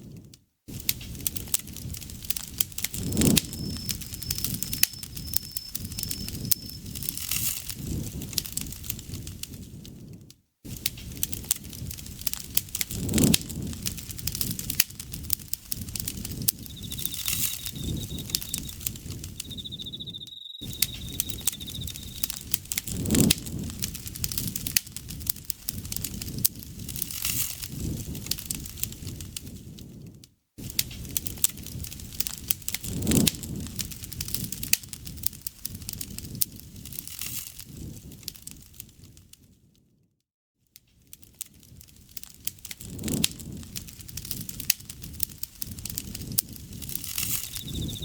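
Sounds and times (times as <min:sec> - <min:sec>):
low rumble of flame: 0:00.0 - 0:39.9, 0:41.0 - 0:48.0
campfire crackling: 0:00.8 - 0:09.7, 0:10.8 - 0:29.8, 0:30.6 - 0:39.2, 0:41.1 - 0:48.0
insect trilling: 0:03.0 - 0:07.0, 0:15.8 - 0:22.4, 0:47.0 - 0:48.0.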